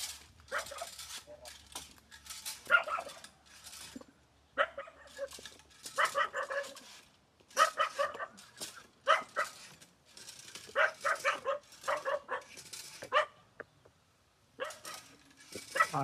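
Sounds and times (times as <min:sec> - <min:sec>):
dog barking: 0:00.5 - 0:00.9, 0:02.7 - 0:03.2, 0:04.6 - 0:05.3, 0:06.0 - 0:06.8, 0:07.6 - 0:08.3, 0:09.0 - 0:09.5, 0:10.8 - 0:12.5, 0:13.1 - 0:13.4, 0:15.7 - 0:16.0.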